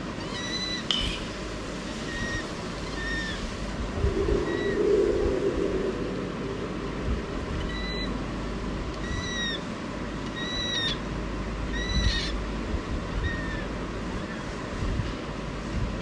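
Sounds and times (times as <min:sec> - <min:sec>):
low background hum: 0:00.0 - 0:16.0
parrot whistling: 0:04.4 - 0:05.3.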